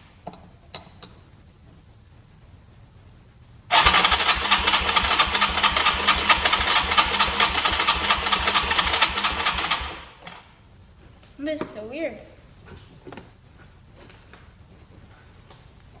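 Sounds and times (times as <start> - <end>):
engine electric starter cranking: 3.7 - 10.5.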